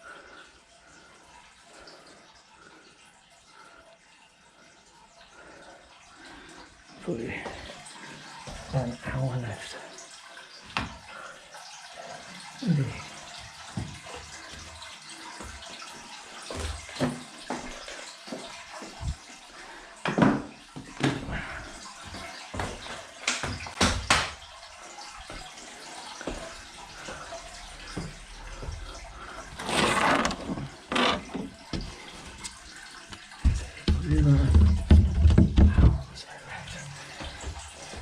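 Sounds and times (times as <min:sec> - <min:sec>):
water running through hose: 0:12.0 - 0:38.0
knocks and clatter: 0:33.4 - 0:36.1.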